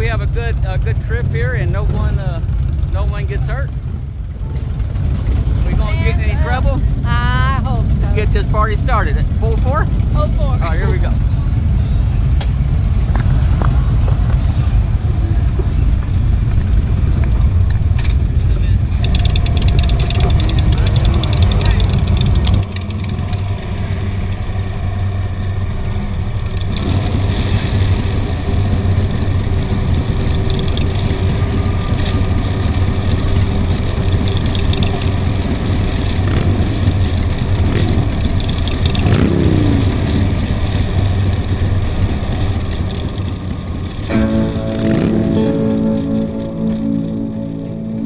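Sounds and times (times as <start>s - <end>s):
motorcycle engine running: 0.0s - 48.0s
music: 44.1s - 48.0s.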